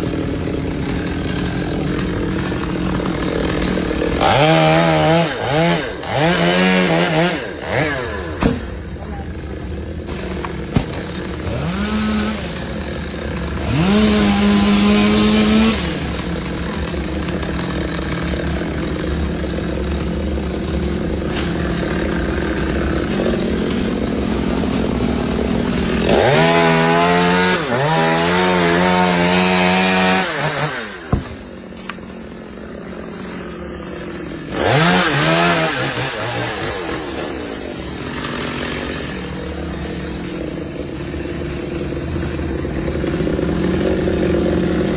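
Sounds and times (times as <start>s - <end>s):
chainsaw engine revving: 0.0s - 44.9s.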